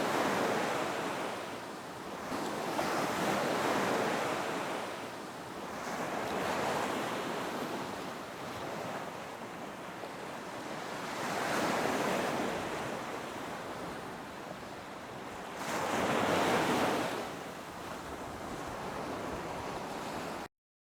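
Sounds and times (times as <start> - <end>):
waves breaking and washing in: 0.0 - 20.5.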